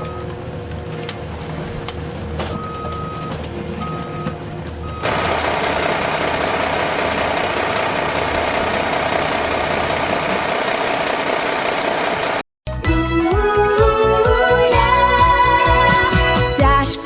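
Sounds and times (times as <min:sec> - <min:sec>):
heavy engine running: 0:00.0 - 0:12.4.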